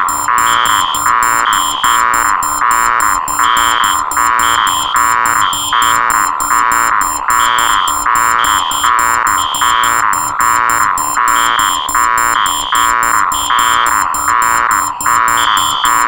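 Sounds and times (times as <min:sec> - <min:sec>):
harsh alarm beeps: 0:00.0 - 0:16.0
rapid ticking: 0:00.0 - 0:16.0
shrill beep: 0:00.0 - 0:16.0
steady high alarm tone: 0:00.0 - 0:16.0.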